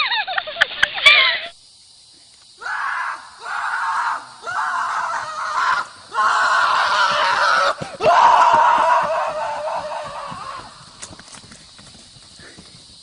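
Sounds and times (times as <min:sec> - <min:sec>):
loud screams: 0:02.6 - 0:11.0.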